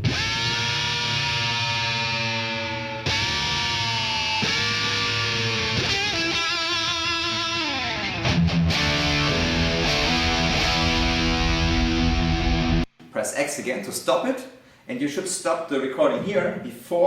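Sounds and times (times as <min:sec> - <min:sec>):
lead electric guitar: 0:00.0 - 0:12.9.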